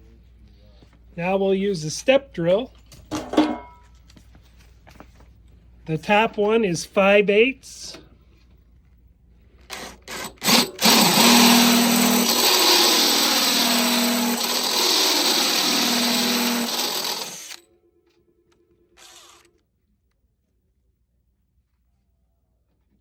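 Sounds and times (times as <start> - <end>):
power drill drilling: 9.7 - 17.6, 19.0 - 19.5.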